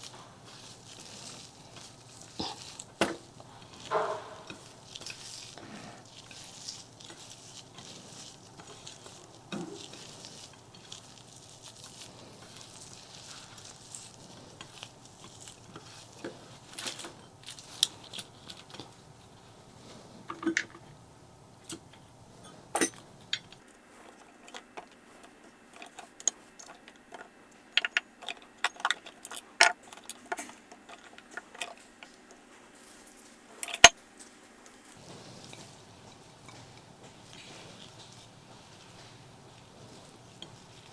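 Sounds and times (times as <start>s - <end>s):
cutlery clinking: 0.0s - 19.0s, 21.7s - 23.6s
chewing and crunching: 0.0s - 40.9s.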